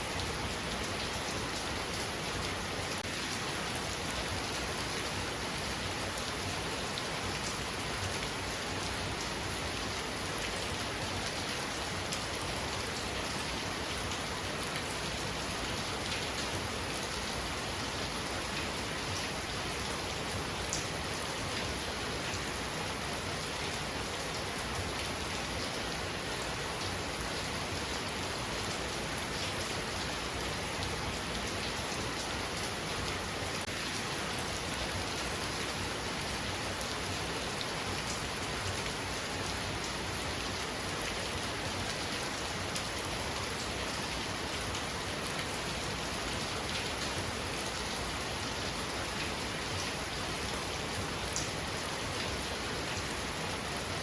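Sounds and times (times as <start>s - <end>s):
heavy rain falling: 0.0s - 54.0s.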